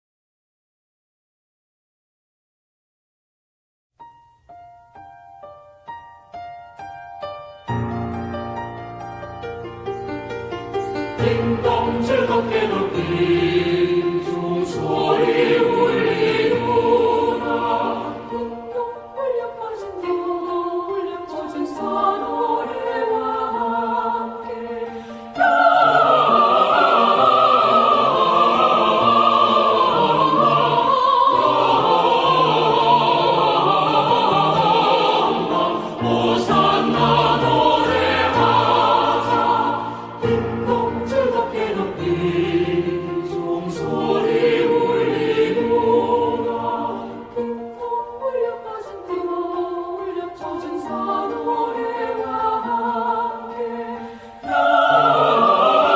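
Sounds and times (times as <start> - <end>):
women's choir singing: 10.9 - 55.9.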